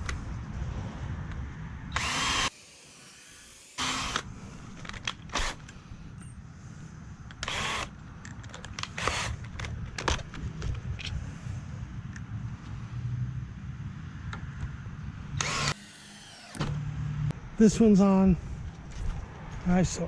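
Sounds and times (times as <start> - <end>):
cordless drill driving screws: 1.9 - 4.3, 5.3 - 5.7, 7.4 - 7.9, 8.8 - 9.5, 15.4 - 16.6
handling clicks and knocks: 8.2 - 11.2.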